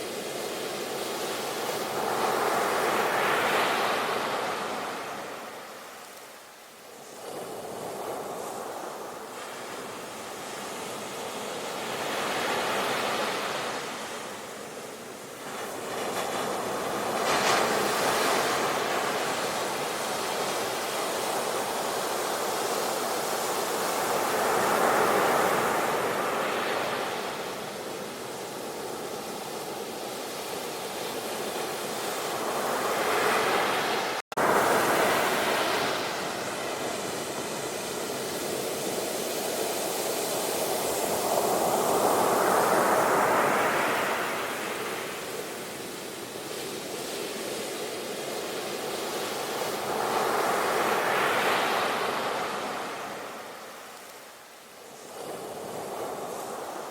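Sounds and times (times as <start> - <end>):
sea waves breaking: 31.4 - 45.8.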